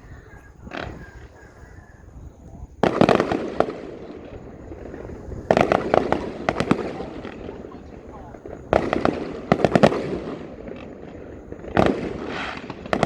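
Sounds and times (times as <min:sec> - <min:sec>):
fireworks cracking: 0:00.0 - 0:13.0.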